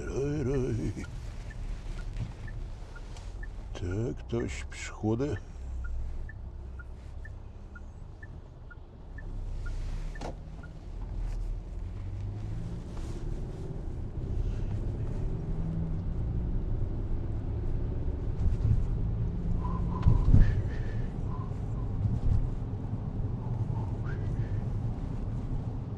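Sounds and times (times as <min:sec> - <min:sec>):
turn signal ticking: 0:00.0 - 0:18.3
car engine and road noise: 0:00.0 - 0:25.9.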